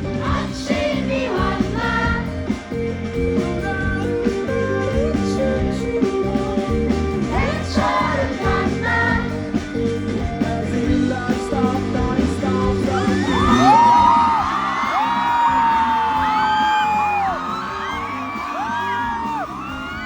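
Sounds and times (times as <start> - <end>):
rock band playing live: 0.0 - 20.0
lead singer singing: 10.2 - 19.4.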